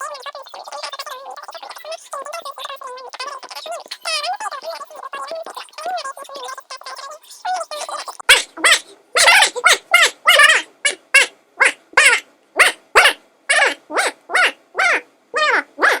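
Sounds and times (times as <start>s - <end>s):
dog barking rapidly: 3.5s - 16.0s.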